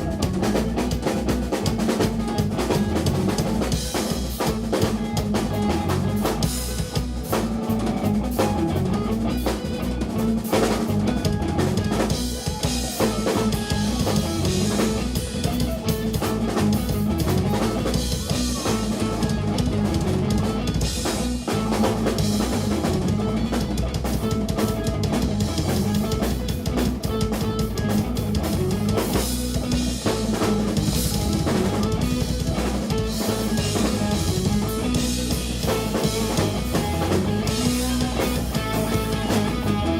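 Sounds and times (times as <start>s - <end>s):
instrumental rock band: 0.0s - 39.9s.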